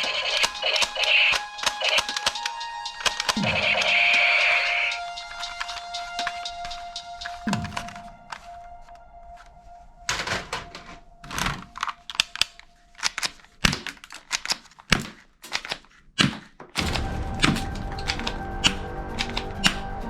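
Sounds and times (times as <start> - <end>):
toy guns clicking and snapping: 0.0 - 5.0, 11.2 - 19.8.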